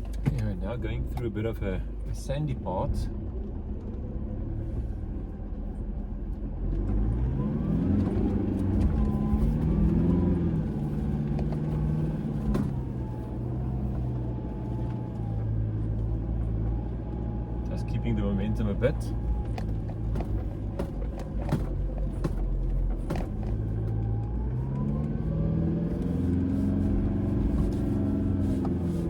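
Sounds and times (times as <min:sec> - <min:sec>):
car engine pulling through sand: 0:20.3 - 0:29.0.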